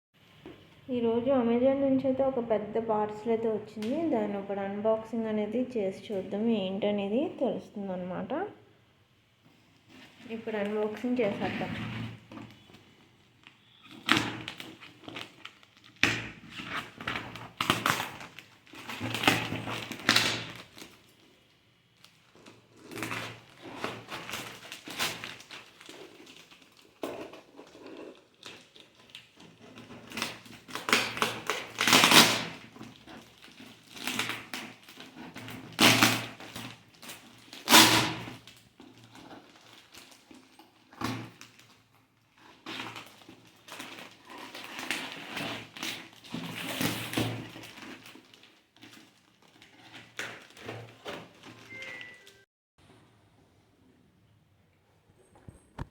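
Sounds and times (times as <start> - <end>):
cardboard packaging rustling and tearing: 9.5 - 52.4.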